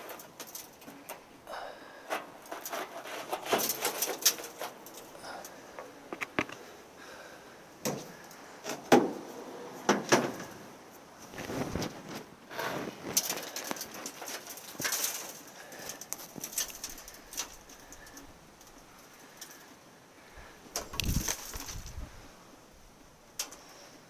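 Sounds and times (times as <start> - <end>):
scrapes and clicks: 5.8 - 6.7.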